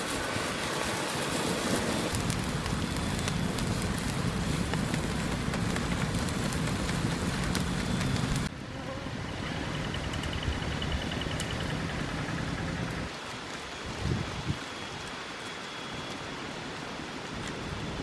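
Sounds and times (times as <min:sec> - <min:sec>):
food sizzling on wood fire: 0:00.0 - 0:08.5
fire crackling and popping: 0:00.1 - 0:08.5.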